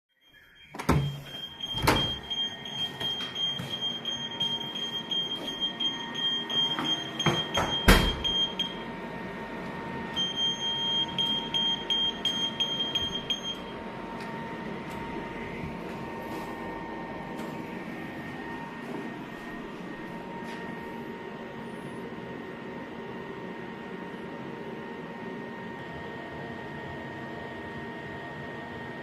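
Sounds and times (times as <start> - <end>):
alarm buzzer beeping: 0.2 - 9.0, 10.1 - 13.9
air handling unit hum: 0.4 - 29.0.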